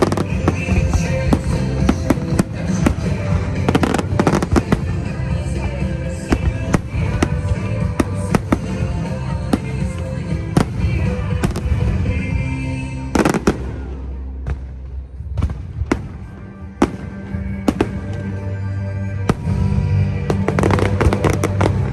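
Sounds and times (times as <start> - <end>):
fireworks bangs: 0.0 - 12.4, 13.1 - 18.4, 19.2 - 21.9
background music: 0.0 - 21.9
fireworks crackling: 0.0 - 21.9.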